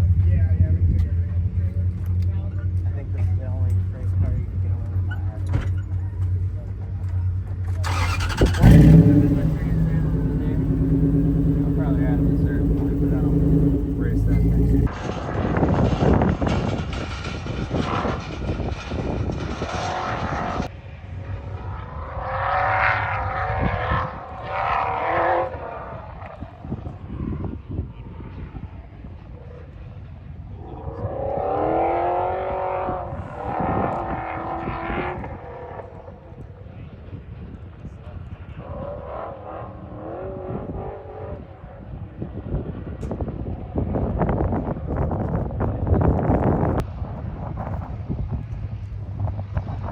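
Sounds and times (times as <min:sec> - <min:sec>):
vehicle engine revving: 0:07.8 - 0:14.9
wind buffeting microphone: 0:43.2 - 0:49.9.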